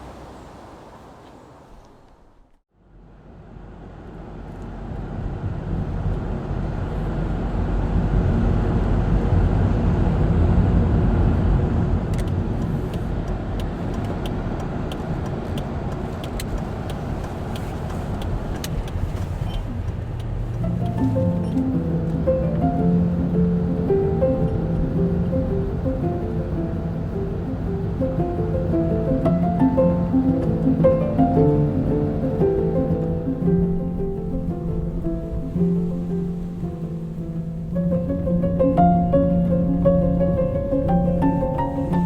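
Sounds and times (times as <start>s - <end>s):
motor vehicle rumbling: 0.0s - 42.0s
music: 20.6s - 42.0s.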